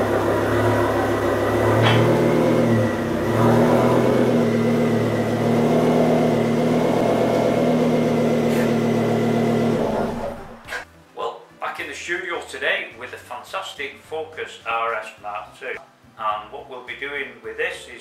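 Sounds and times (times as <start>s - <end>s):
car engine running: 0.0s - 10.8s.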